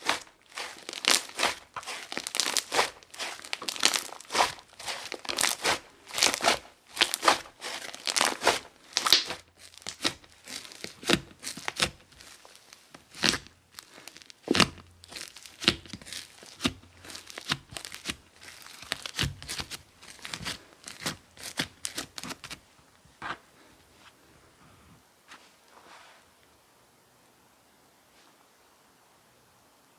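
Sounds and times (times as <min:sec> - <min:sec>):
slime crackling: 0:00.0 - 0:22.6.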